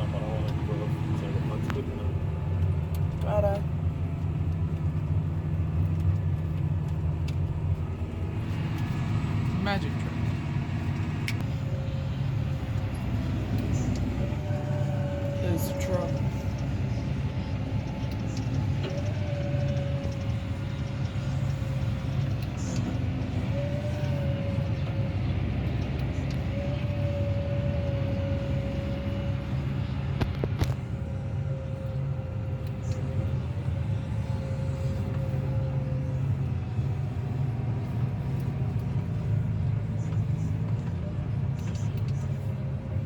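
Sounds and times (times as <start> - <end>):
farm vehicle engine running: 0.0 - 43.0
wavering mid-pitched whine: 7.8 - 40.7.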